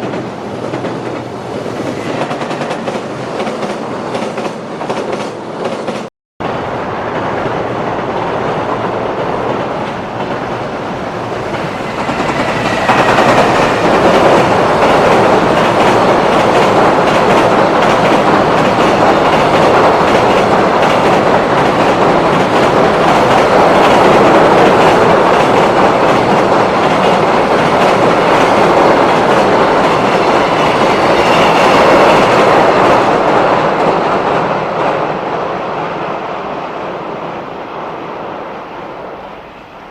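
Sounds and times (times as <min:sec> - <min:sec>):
train wheels clattering on bridge: 0:11.2 - 0:35.1.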